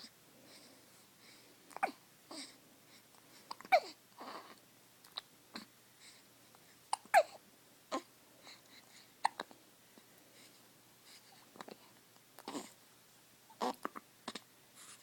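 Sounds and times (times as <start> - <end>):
baby breathing softly: 0.0 - 4.6, 5.5 - 12.8, 14.3 - 15.0
baby hiccupping: 6.9 - 8.1, 9.2 - 9.5, 12.4 - 12.7, 13.5 - 14.5.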